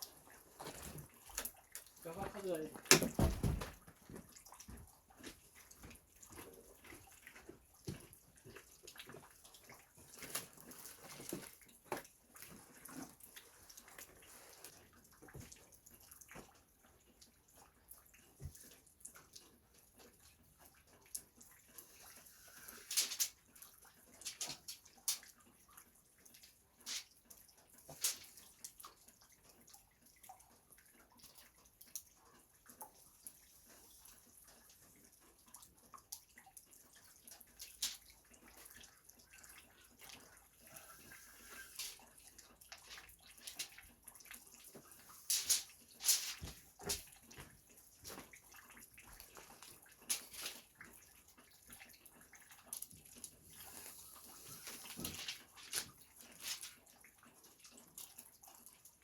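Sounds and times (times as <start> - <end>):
handling knocks clicks and rustles: 2.1 - 8.6.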